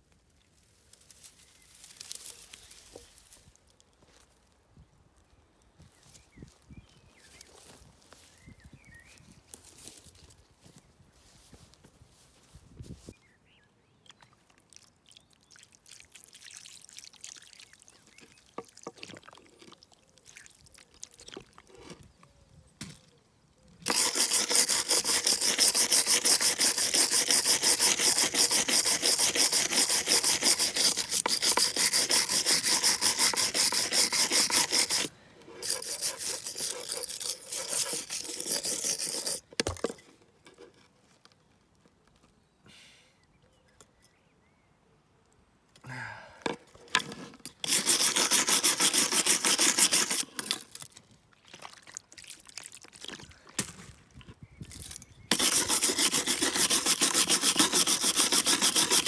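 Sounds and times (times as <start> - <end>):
scraping rust off metal: 23.8 - 40.7, 46.8 - 50.9, 54.8 - 59.0.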